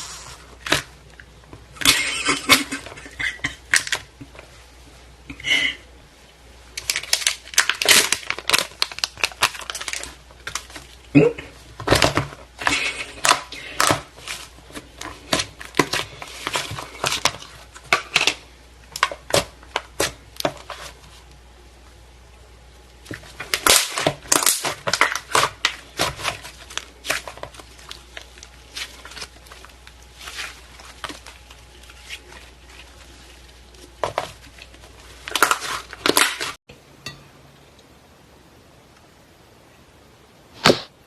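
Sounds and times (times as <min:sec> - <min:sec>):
slime popping and crackling: 0:06.8 - 0:11.2, 0:23.1 - 0:36.6.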